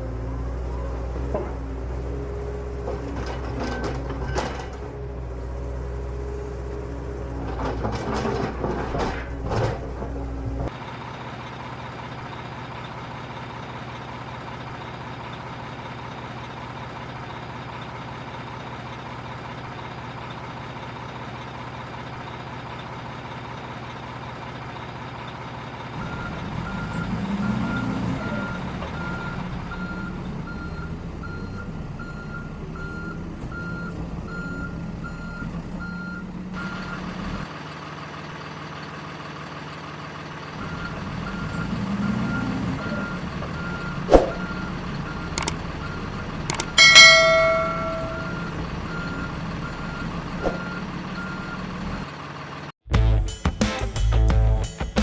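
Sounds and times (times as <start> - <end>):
toy truck engine sound: 36.6 - 52.6
reversing beeper: 40.6 - 52.0.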